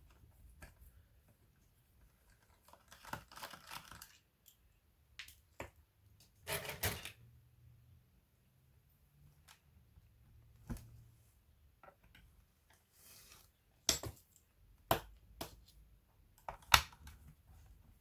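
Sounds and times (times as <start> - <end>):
soft rustle: 12.7 - 13.7.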